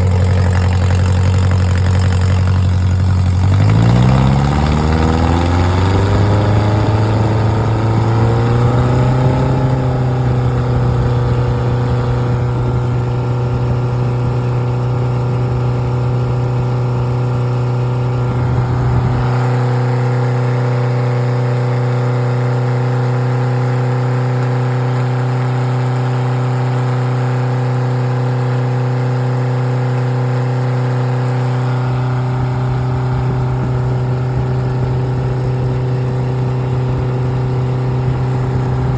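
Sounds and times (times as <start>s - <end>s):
car engine revving: 0.0s - 21.0s, 30.9s - 38.9s
low rumble: 17.9s - 19.3s.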